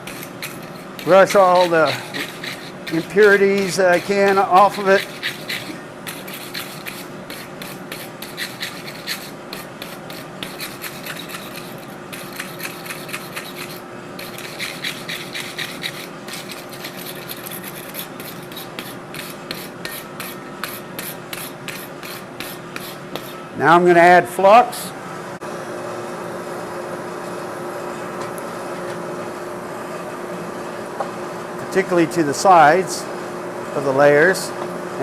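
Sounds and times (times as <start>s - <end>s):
wire brush rasping on steel: 0.0s - 23.4s.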